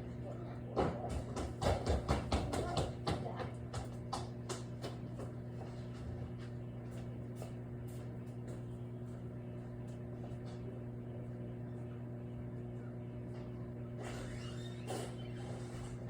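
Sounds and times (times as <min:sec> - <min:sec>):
microwave oven hum: 0:00.0 - 0:16.0.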